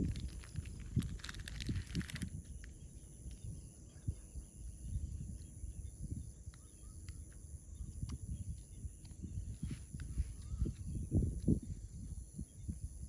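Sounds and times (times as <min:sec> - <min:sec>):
low thumps and rumbles: 0:00.0 - 0:02.3
high-pitched insect chorus: 0:00.0 - 0:13.0.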